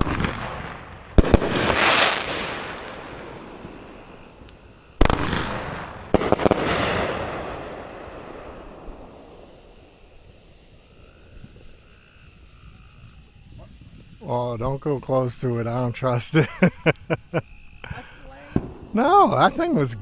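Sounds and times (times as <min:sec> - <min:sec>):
firework bangs with echo: 0:00.0 - 0:10.0, 0:18.5 - 0:19.0.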